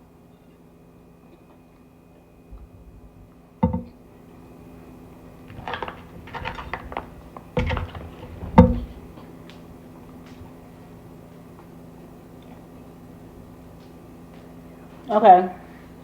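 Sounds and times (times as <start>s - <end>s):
hard jar knocking: 3.6s - 3.9s, 5.5s - 9.1s.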